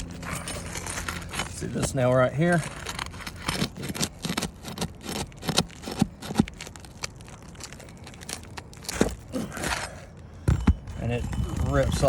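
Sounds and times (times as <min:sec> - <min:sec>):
roofing shingle tearing: 0:00.0 - 0:12.0.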